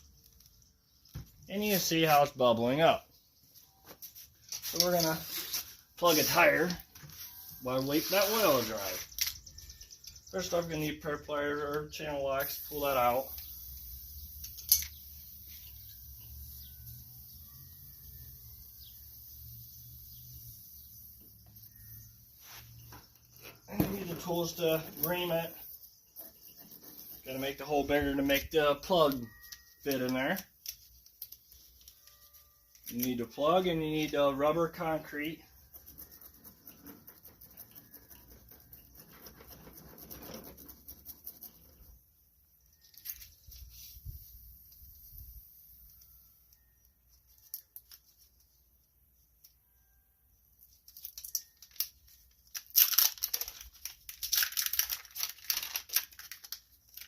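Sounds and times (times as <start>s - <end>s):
small parts rustling and scratching: 3.6s - 11.0s, 14.3s - 16.0s, 22.5s - 34.2s, 34.8s - 45.3s, 47.0s - 48.8s, 50.6s - 57.0s
faint bird chirps: 7.1s - 30.0s, 33.4s - 50.9s
small irregular ticks: 35.5s - 42.0s.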